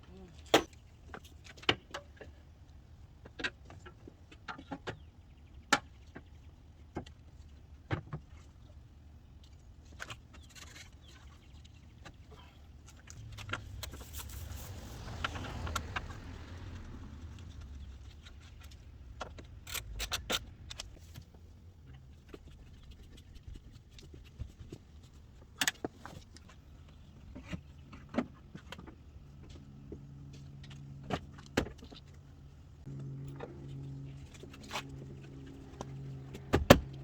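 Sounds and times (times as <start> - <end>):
rustling and scraping: 9.4 - 37.0.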